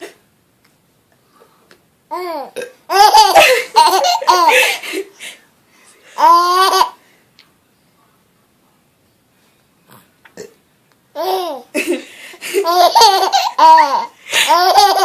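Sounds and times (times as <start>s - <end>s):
baby laughing: 2.1s - 4.9s, 6.2s - 7.0s, 11.2s - 15.0s.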